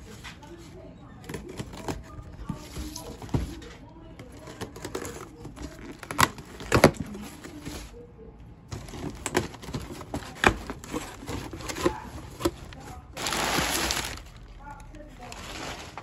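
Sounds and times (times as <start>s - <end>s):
packaging rustling and crinkling: 1.3s - 8.0s, 8.7s - 16.0s.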